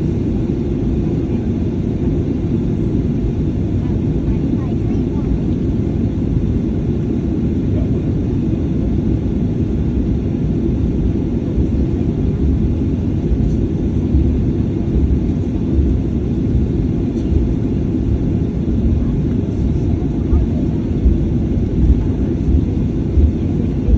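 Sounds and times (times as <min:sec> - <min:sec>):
jet engines rumbling in cabin: 0:00.0 - 0:23.9.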